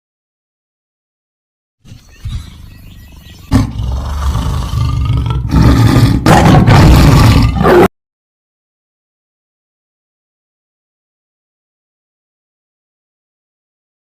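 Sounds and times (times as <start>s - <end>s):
big cat roaring: 3.5s - 7.9s.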